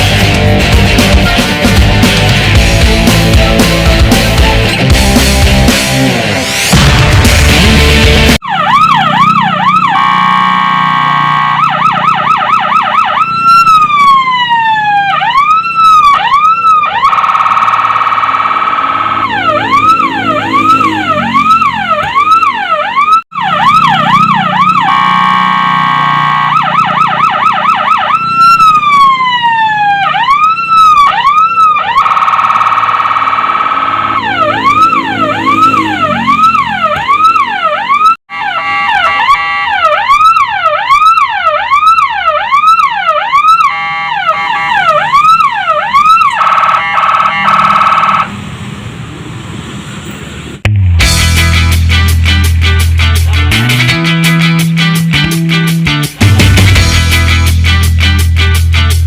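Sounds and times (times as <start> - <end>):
electronic fire truck siren: 8.4 - 48.5.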